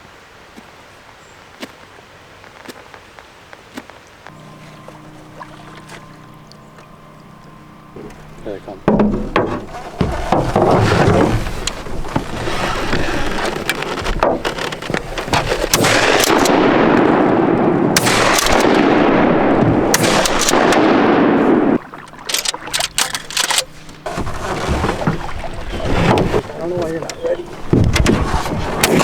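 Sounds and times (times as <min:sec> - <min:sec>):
sharp clicks and knocks: 0:08.9 - 0:16.6
shotgun shots echoing: 0:15.7 - 0:21.8.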